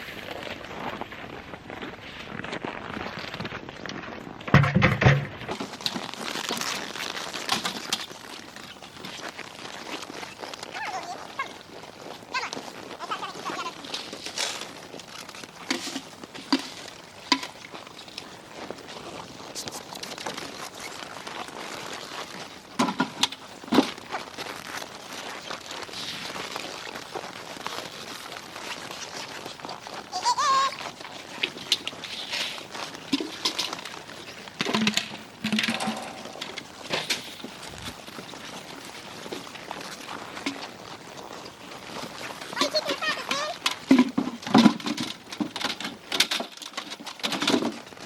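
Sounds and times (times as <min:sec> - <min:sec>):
hay rustling and crunching: 0:05.5 - 0:22.7, 0:23.4 - 0:44.0.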